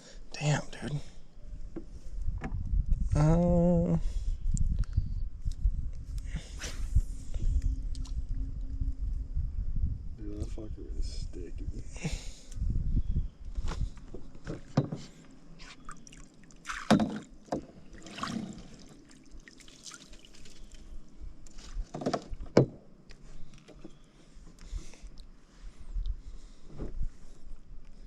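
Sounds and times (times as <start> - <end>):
knocks and clunks in a canoe: 1.7 - 2.6, 13.7 - 15.8, 16.6 - 18.8, 21.6 - 22.9.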